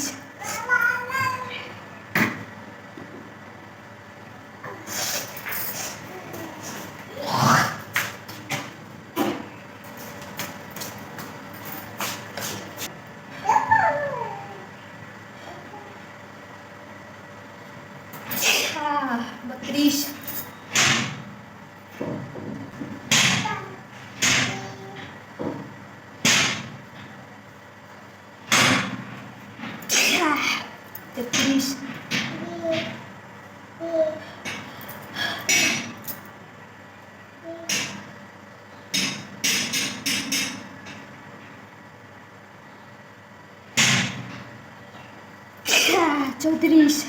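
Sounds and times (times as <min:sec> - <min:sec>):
woman sniffing: 0:04.8 - 0:06.0.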